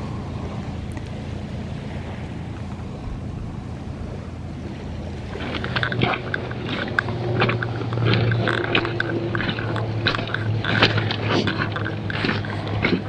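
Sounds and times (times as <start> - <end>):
footsteps crunching on gravel: 5.4 - 13.0.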